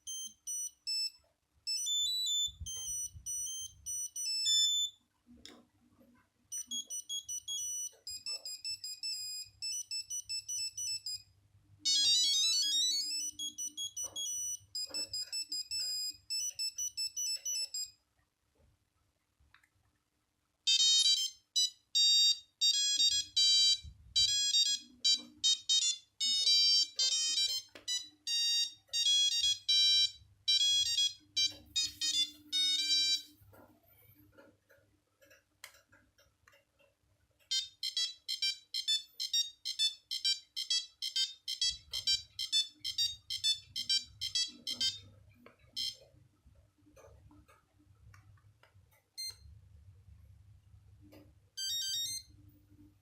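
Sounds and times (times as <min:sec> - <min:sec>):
monophonic phone ringtone: 0:00.0 - 0:05.0, 0:06.5 - 0:18.0, 0:20.7 - 0:33.4, 0:37.5 - 0:46.1, 0:51.6 - 0:52.4.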